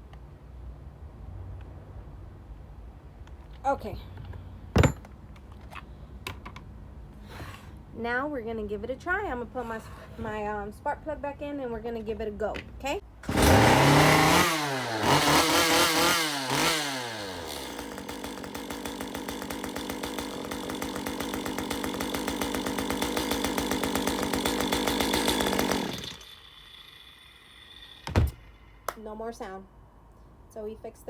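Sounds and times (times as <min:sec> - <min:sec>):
chainsaw revving and idling: 0:13.2 - 0:28.1.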